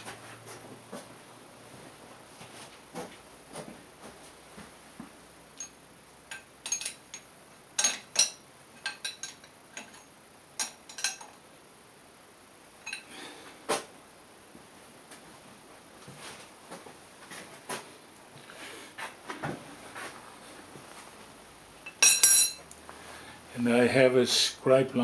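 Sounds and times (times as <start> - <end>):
metal tools clinking: 5.6 - 11.4, 12.8 - 13.1, 21.8 - 22.6.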